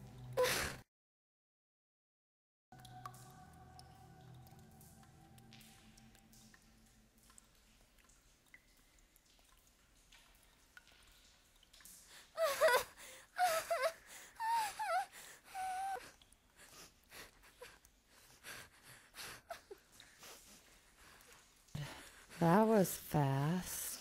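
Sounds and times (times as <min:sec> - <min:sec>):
woman whimpering: 0:12.4 - 0:16.2.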